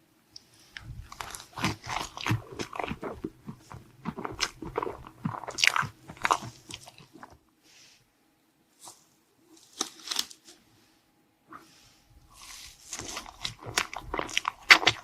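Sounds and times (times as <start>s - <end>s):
person chewing crunchy food: 0.7s - 7.4s, 12.3s - 15.0s.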